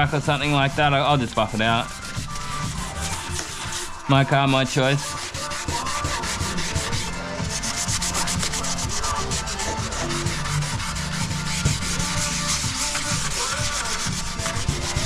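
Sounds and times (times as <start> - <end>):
sandpaper rubbing back and forth: 0.0 - 15.0.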